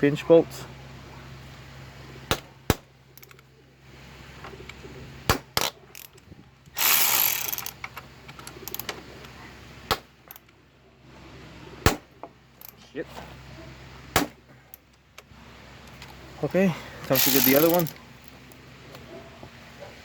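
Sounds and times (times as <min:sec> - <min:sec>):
ratchet clicking: 0:05.9 - 0:08.9, 0:17.1 - 0:18.0
loud ratchet burst: 0:06.8 - 0:07.8, 0:17.1 - 0:18.0.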